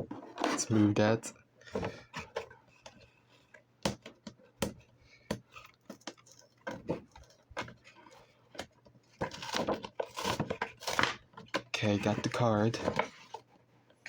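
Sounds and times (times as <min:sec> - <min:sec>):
plastic packaging clicking and rattling: 0:05.5 - 0:13.5.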